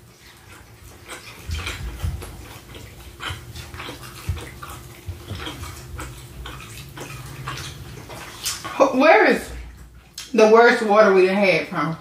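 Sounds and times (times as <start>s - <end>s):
mouth chewing with wet smacks: 0.0s - 8.8s, 9.5s - 10.4s.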